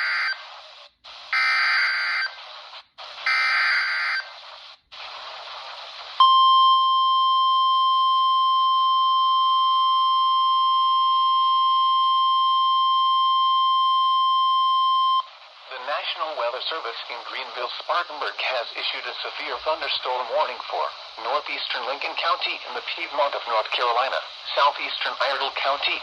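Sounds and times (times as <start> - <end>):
steady warning alarm tone: 0.0 - 0.4, 3.3 - 4.3
radio hiss: 0.0 - 6.4, 12.3 - 26.0.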